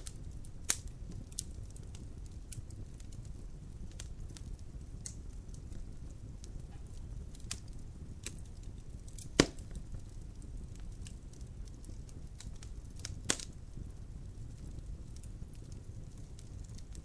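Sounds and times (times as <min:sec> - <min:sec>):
wood fire crackling: 0:00.0 - 0:17.0
loud fire pop: 0:09.3 - 0:09.8.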